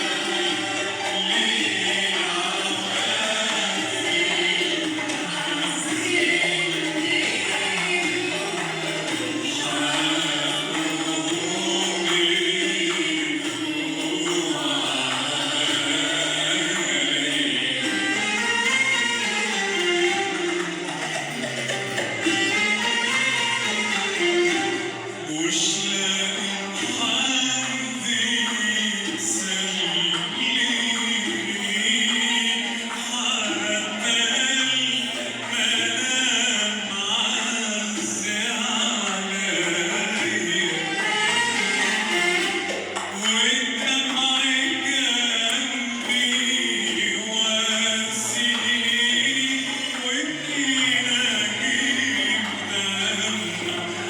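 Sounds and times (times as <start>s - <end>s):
instrumental ensemble: 0.0s - 34.2s, 36.9s - 44.8s
voices singing together: 0.0s - 54.0s.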